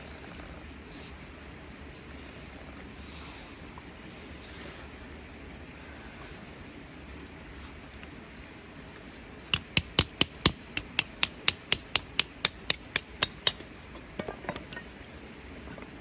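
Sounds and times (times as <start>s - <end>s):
sharp knocks with high ring: 9.6s - 13.6s.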